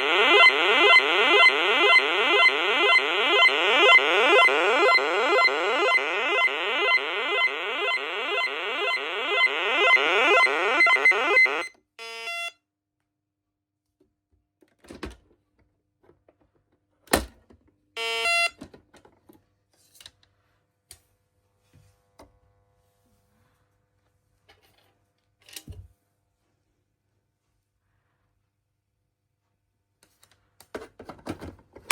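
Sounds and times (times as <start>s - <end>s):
alarm siren sweeping wail: 0.0s - 11.7s.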